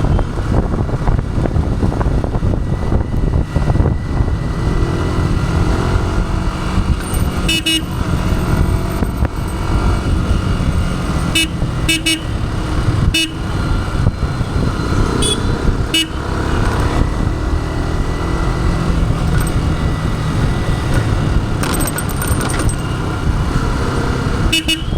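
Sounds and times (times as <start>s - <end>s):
motorcycle engine running: 0.0s - 24.9s
vehicle horn toots: 7.4s - 8.2s, 11.3s - 13.7s, 15.2s - 16.7s, 24.4s - 24.9s.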